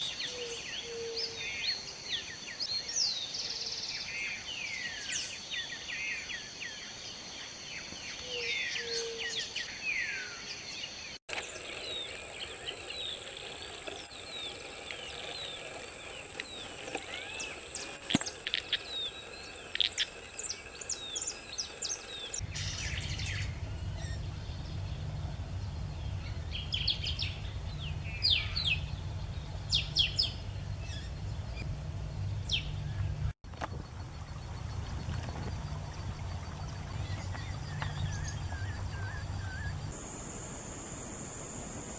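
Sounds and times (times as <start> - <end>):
birds calling and chirping: 11.3 - 23.5, 33.6 - 40.4
low rumble: 22.4 - 39.9.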